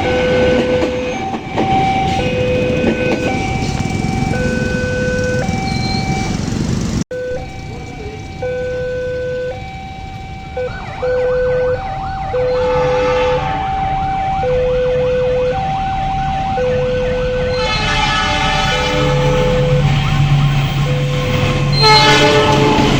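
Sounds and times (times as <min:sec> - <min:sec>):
level crossing two-tone alarm: 0:00.0 - 0:06.4, 0:07.1 - 0:22.3.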